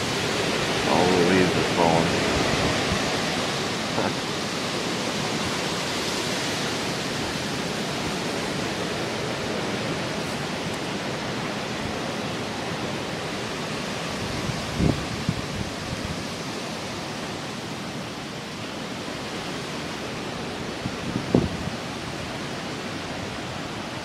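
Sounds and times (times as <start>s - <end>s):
strong wind rushing: 0.0s - 17.1s, 20.0s - 22.4s.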